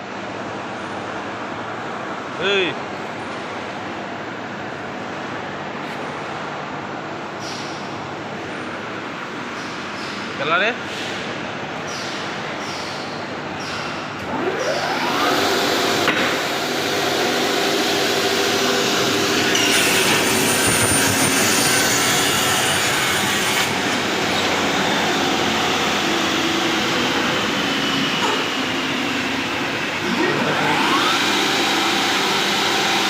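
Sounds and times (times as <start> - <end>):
electric saw whining: 14.3 - 33.0.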